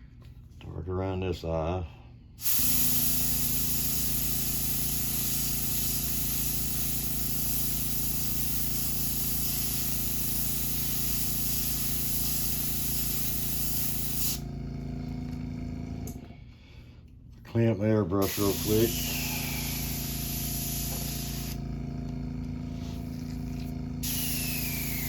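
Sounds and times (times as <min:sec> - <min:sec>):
airbrush spraying hiss: 0:02.4 - 0:14.4, 0:18.2 - 0:21.6, 0:22.7 - 0:25.0.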